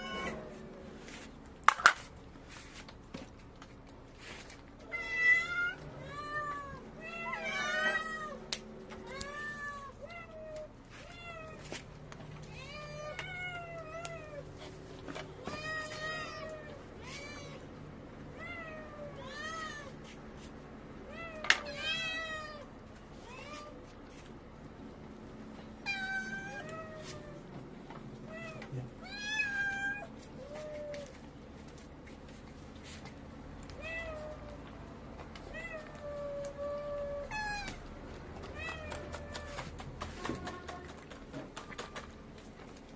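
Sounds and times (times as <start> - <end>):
cats meowing: 0.0 - 0.8, 4.8 - 11.7, 12.4 - 14.6, 15.4 - 17.7, 25.8 - 27.6, 28.2 - 31.2, 33.7 - 34.7, 35.5 - 39.8.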